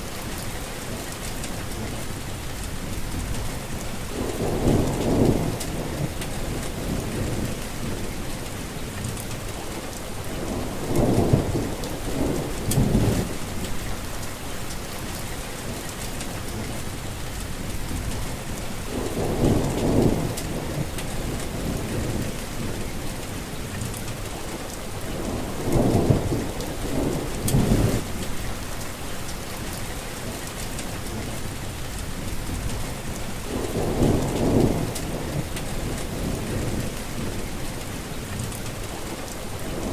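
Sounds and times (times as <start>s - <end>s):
steady rain falling: 0.0s - 39.9s
thunder rumbling: 2.7s - 8.3s, 10.2s - 14.9s, 17.4s - 23.0s, 24.9s - 28.9s, 32.0s - 39.9s.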